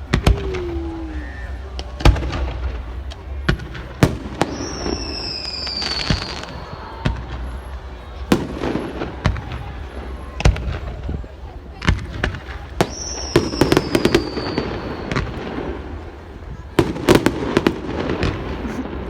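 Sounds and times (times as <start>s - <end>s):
falling firework whistle: 0.0s - 2.7s, 4.0s - 9.6s, 12.8s - 15.6s
firework crackling: 0.0s - 19.0s
fireworks bangs: 0.0s - 19.0s.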